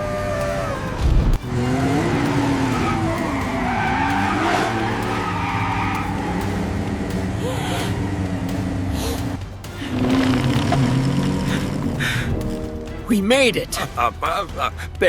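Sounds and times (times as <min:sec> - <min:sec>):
racing car engines revving: 0:00.0 - 0:13.0.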